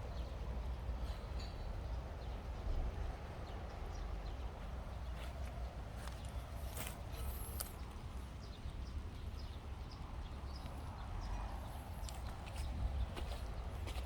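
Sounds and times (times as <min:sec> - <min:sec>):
footsteps on road: 0:04.6 - 0:08.1, 0:10.6 - 0:14.0.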